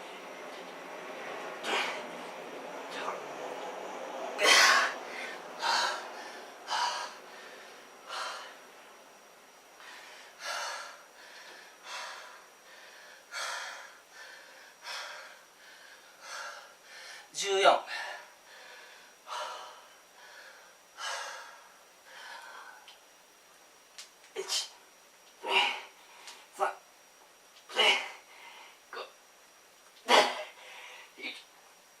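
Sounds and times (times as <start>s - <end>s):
man breathing hard: 4.4s - 8.7s, 9.8s - 22.9s, 27.8s - 28.9s, 30.2s - 31.2s.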